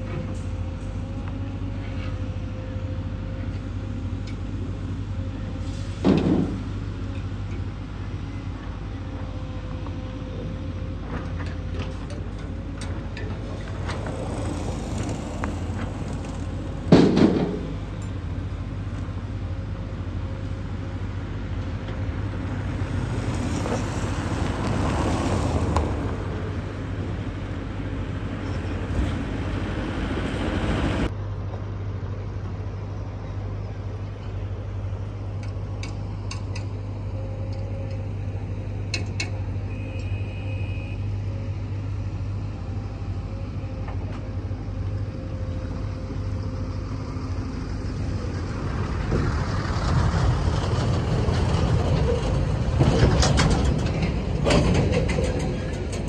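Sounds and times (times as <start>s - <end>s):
road traffic engine hum: 0.0s - 56.0s
vehicle passing: 13.4s - 18.0s, 22.1s - 31.1s, 45.7s - 55.7s.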